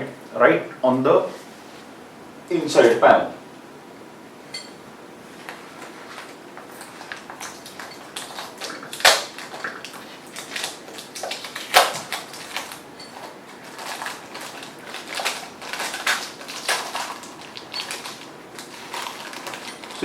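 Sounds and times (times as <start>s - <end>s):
cardboard packaging rustling: 5.4s - 20.0s.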